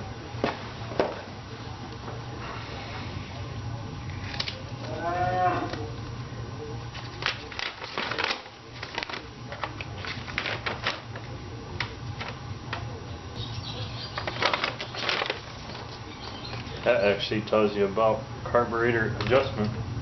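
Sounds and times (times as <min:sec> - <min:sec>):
steady low hum: 0:00.0 - 0:20.0
paper crinkling and rustling: 0:06.9 - 0:12.9, 0:14.1 - 0:16.6.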